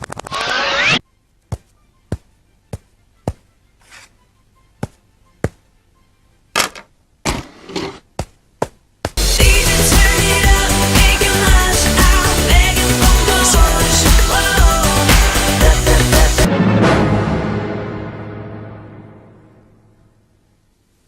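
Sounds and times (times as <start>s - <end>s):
loud pop music: 9.2s - 16.5s.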